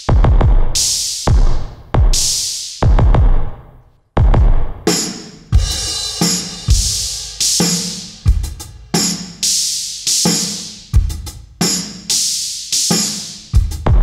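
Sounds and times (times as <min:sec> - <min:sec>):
electronic kick drum hits: 0:00.1 - 0:03.6, 0:04.2 - 0:04.9, 0:05.5 - 0:09.4, 0:13.6 - 0:14.0
bright snare hits: 0:04.9 - 0:10.8, 0:12.9 - 0:13.3.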